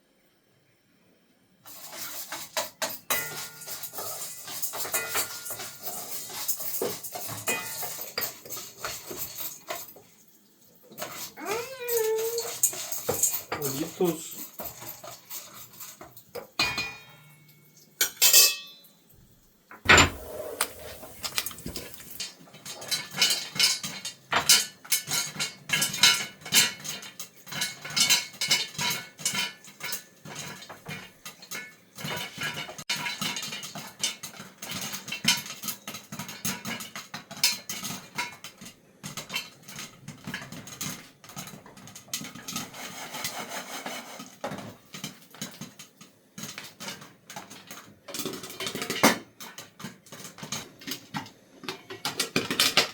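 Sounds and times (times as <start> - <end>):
popcorn popping in a pot: 1.6 - 10.0, 19.9 - 52.9
sharp metal clanks: 19.9 - 21.8.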